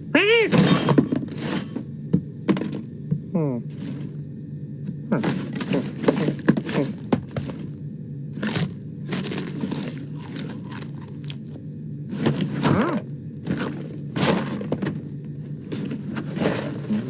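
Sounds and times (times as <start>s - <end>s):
knocks and cracks: 5.2s - 7.7s.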